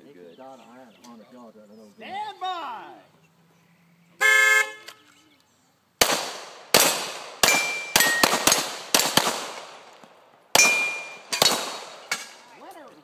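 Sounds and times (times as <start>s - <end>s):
pistol shots: 6.0s - 9.9s, 10.5s - 12.4s
steel plates ringing: 10.6s - 11.5s.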